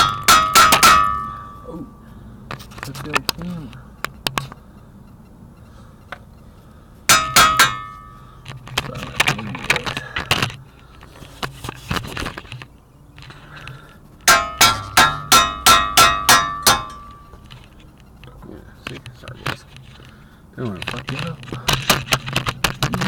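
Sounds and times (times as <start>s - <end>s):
hammer clanging on steel: 0.0s - 2.1s, 7.1s - 8.5s, 14.2s - 17.7s
metal clinks and rattling: 0.0s - 3.2s, 7.1s - 20.1s.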